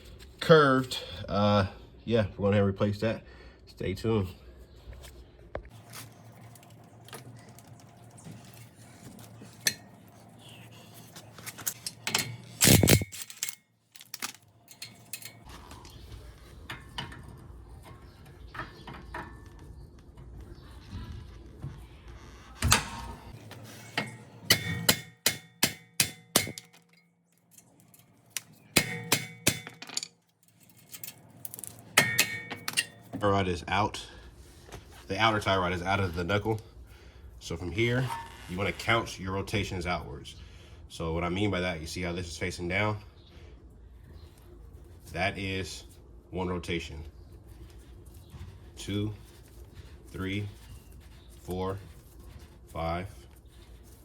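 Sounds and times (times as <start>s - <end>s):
metal tools clanking: 8.2s - 10.6s, 11.3s - 16.0s, 22.7s - 33.2s
sharp ringing metal strikes: 24.5s - 26.7s, 28.8s - 29.8s, 32.0s - 33.0s.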